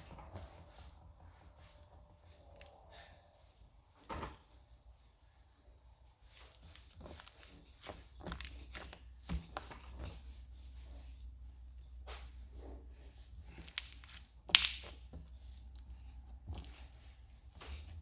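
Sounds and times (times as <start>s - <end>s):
slime squeezed by hand: 13.5s - 15.8s
slime snapping: 13.5s - 15.9s.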